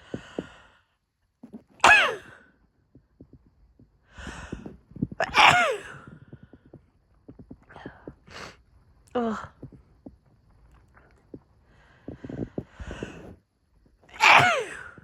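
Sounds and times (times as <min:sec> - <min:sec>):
hitching in-breaths: 0:00.0 - 0:02.4, 0:04.0 - 0:08.8, 0:10.9 - 0:13.5
woman sneezing: 0:01.8 - 0:02.3, 0:05.2 - 0:05.9, 0:14.2 - 0:14.9.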